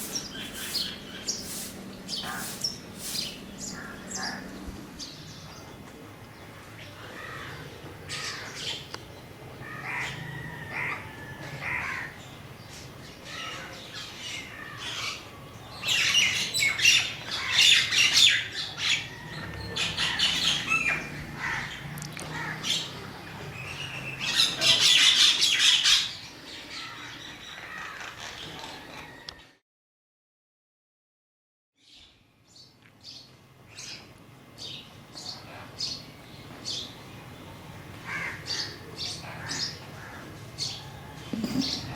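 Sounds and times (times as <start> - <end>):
crows cawing: 3.8 - 4.5, 7.0 - 8.6, 9.6 - 12.2, 20.0 - 22.9, 26.8 - 28.3, 38.0 - 40.4.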